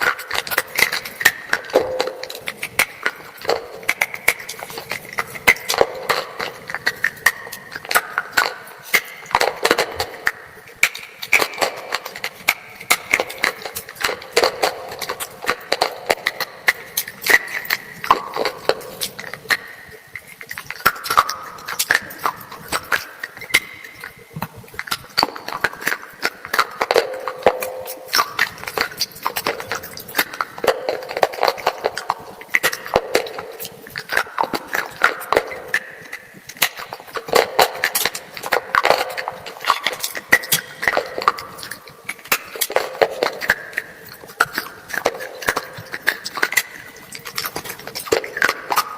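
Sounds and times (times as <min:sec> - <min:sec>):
brittle crunching while chewing: 0:24.7 - 0:48.9.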